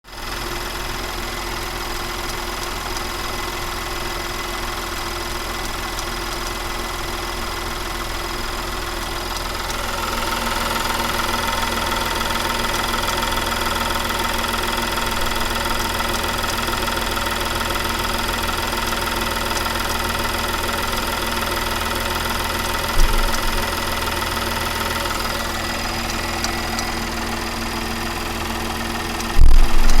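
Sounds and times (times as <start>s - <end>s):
engine idling with metallic sound: 0.1s - 30.0s.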